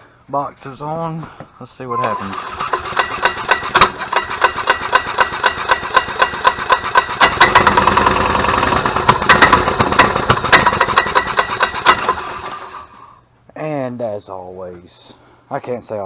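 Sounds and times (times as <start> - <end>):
golf cart engine misfiring: 2.1 - 12.8.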